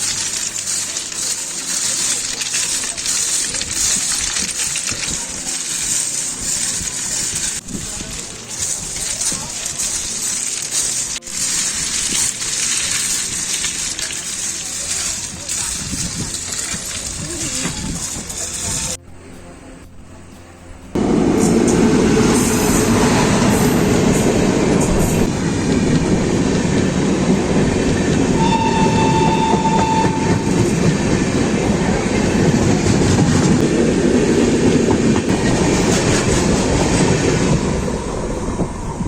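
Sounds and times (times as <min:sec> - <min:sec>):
train wheels rumbling and clattering: 0:00.0 - 0:19.0, 0:20.9 - 0:39.0
high steady tone: 0:19.4 - 0:35.3.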